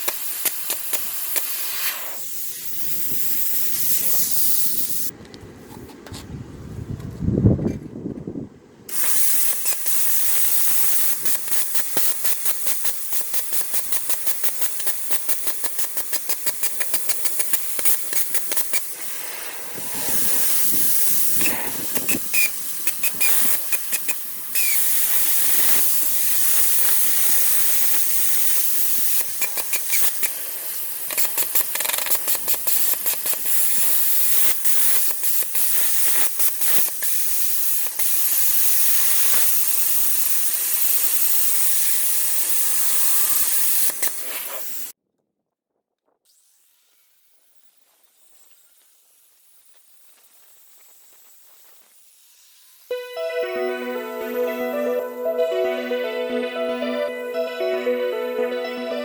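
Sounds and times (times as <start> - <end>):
plasma cutter hissing: 0.0 - 5.1, 8.9 - 44.9, 48.6 - 52.9.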